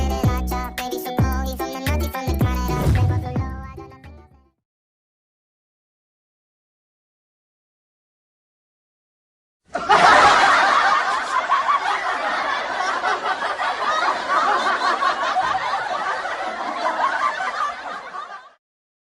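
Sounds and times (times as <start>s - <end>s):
crowd laughing: 9.7s - 18.6s.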